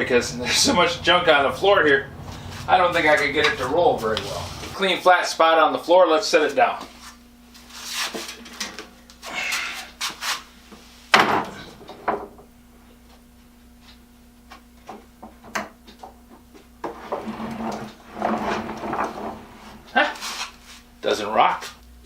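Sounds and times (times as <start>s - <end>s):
wood rubbing and scraping: 0.0s - 4.8s, 16.8s - 20.9s.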